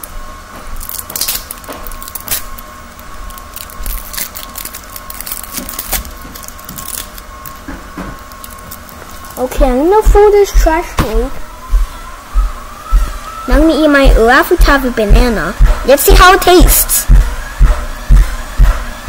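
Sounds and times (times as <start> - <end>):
candy wrapper crinkling: 0.8 - 9.4.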